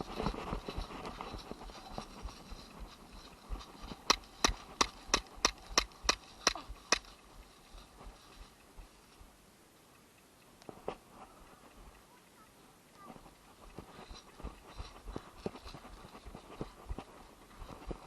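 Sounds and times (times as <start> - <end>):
scuffling noise: 0.0 - 5.1
sharp clicks: 3.6 - 7.3.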